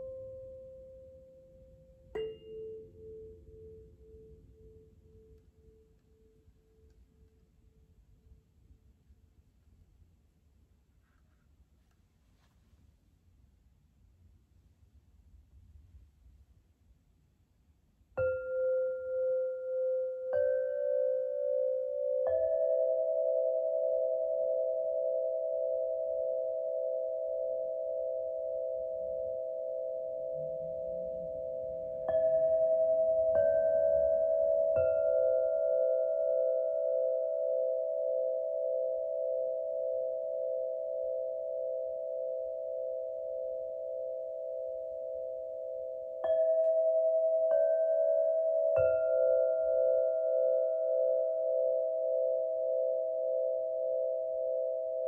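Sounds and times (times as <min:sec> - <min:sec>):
singing bowls ringing: 0:00.0 - 0:07.0, 0:18.2 - 0:55.0.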